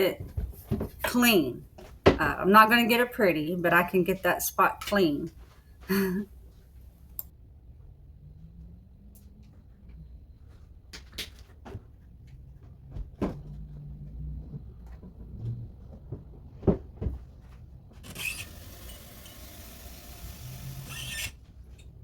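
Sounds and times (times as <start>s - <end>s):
knocks and clunks: 0.0s - 2.7s, 14.4s - 18.1s.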